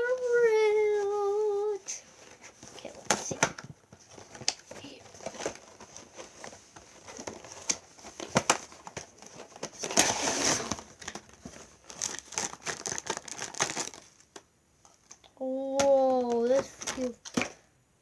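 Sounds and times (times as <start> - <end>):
cardboard and plastic crinkling: 0.2 - 14.3.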